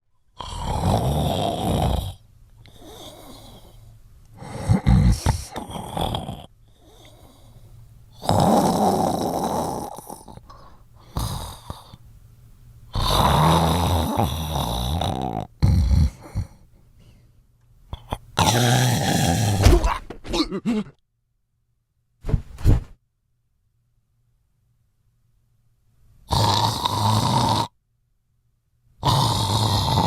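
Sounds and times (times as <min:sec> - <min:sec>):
person snoring loudly: 0:00.4 - 0:03.8, 0:04.4 - 0:07.4, 0:08.2 - 0:12.0, 0:12.9 - 0:16.6, 0:18.0 - 0:20.8, 0:26.3 - 0:27.8, 0:29.0 - 0:30.0
quiet breathing: 0:02.1 - 0:08.2, 0:09.8 - 0:12.2, 0:16.1 - 0:18.4.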